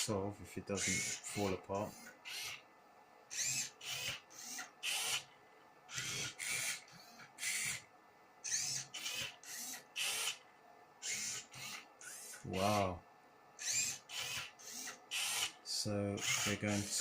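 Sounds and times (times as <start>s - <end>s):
robot motors whirring: 0.8s - 2.6s, 3.3s - 5.2s, 5.9s - 7.8s, 8.5s - 10.4s, 11.0s - 12.9s, 13.6s - 15.6s, 16.2s - 17.0s.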